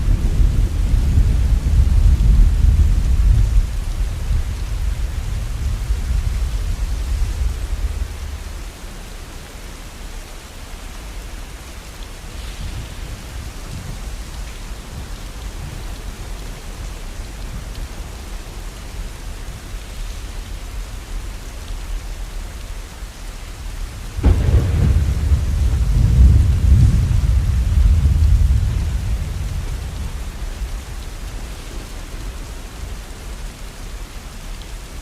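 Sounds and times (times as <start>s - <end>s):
deep rumble of thunder: 0.0s - 8.8s, 24.0s - 33.0s
steady rain falling: 0.0s - 35.0s.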